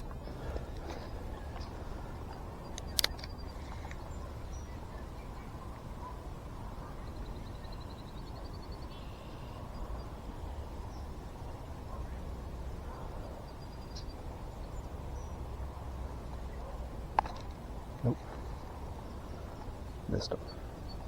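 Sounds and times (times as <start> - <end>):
sharp clicks: 2.7 - 4.0.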